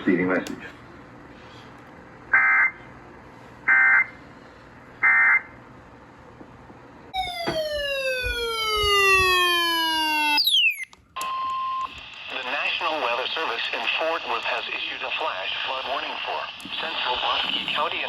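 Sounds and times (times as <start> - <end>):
tone gliding downward: 7.2 - 10.9.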